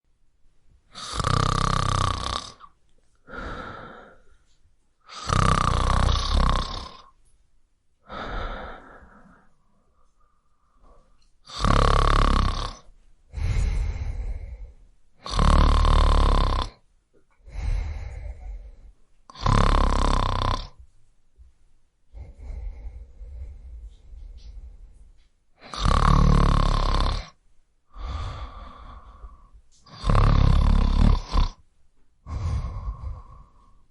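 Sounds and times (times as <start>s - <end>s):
person snoring loudly: 0.9s - 2.7s, 5.1s - 7.1s, 11.4s - 14.6s, 15.2s - 16.8s, 19.3s - 20.8s, 25.6s - 31.6s, 32.3s - 33.8s.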